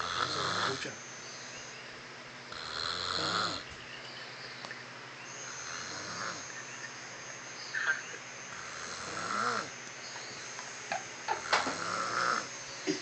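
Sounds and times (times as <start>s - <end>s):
person snoring: 0.0s - 0.8s, 2.5s - 3.6s, 5.4s - 6.5s, 8.5s - 9.7s, 11.4s - 12.5s.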